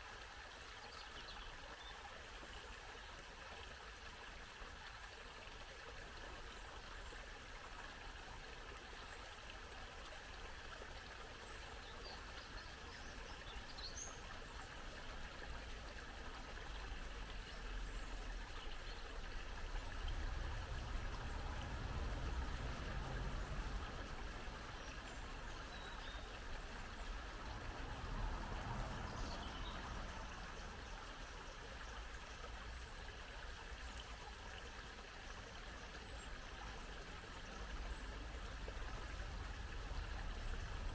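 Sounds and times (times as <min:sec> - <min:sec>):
water trickling over stones: 0:00.0 - 0:40.9
low rumble: 0:19.6 - 0:25.7.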